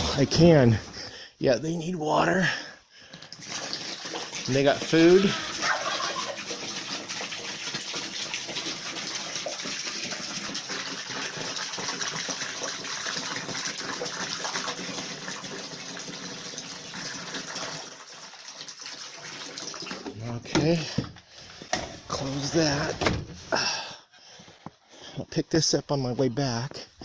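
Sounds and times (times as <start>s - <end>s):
water running into container: 3.0s - 22.9s.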